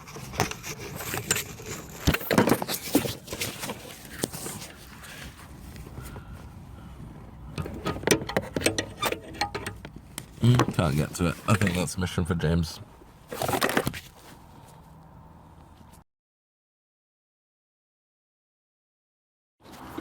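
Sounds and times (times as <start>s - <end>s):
screwdriver clicks and scrapes: 7.6s - 9.9s.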